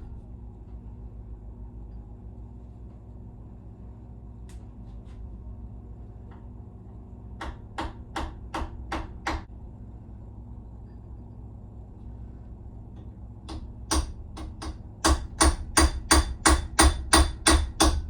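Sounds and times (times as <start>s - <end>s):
steady low hum: 0.0s - 18.0s
hammer tapping on wood: 7.4s - 9.5s.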